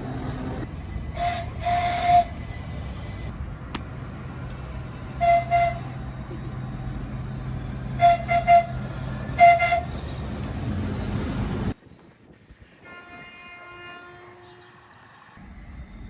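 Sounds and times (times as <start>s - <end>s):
steady low rumble: 2.6s - 11.8s
train horn toots: 5.1s - 6.0s, 8.0s - 10.0s, 12.8s - 14.7s.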